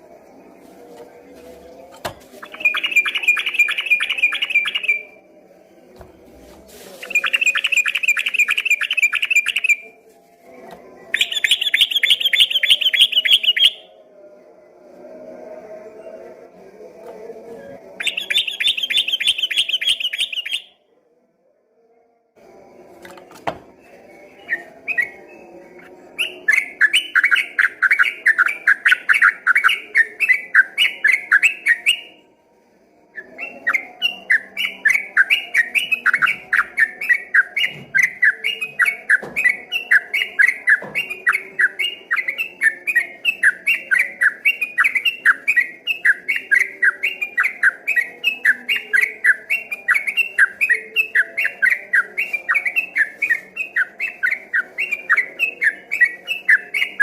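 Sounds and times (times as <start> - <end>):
bulbul rapid chirping song: 2.4 - 5.2, 7.0 - 9.8, 11.2 - 13.9, 18.0 - 20.7.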